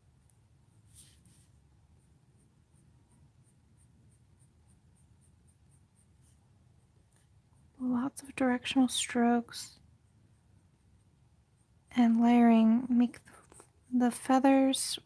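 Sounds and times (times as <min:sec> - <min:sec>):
coloured pencil scratching on paper: 0:00.7 - 0:15.0.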